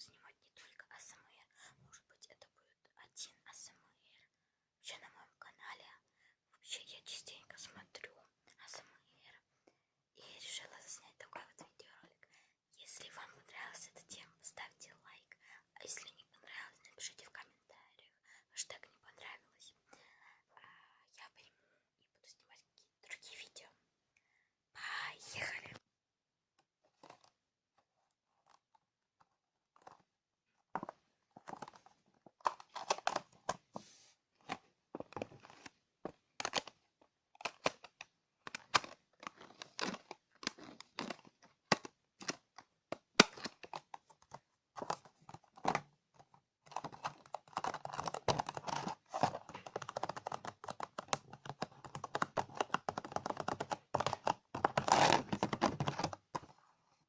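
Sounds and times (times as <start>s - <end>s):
crinkly rustling: 30.7s - 36.8s, 37.4s - 42.4s, 43.2s - 56.6s.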